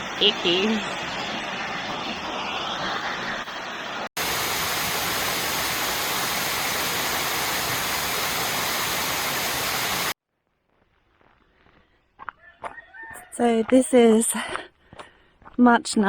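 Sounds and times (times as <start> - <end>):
waterfall rushing: 4.2 - 10.2.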